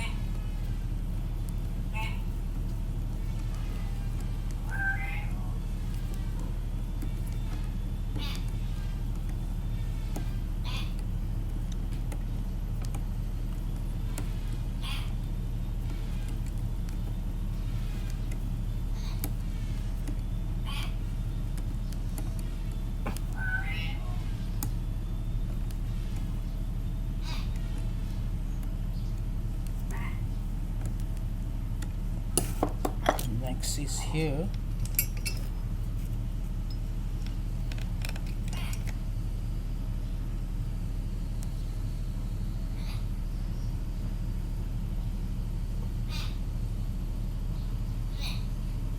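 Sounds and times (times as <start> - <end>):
low background hum: 0.0 - 48.9
low background rumble: 0.0 - 48.9
small metal parts clicking: 34.8 - 35.6, 36.7 - 39.0.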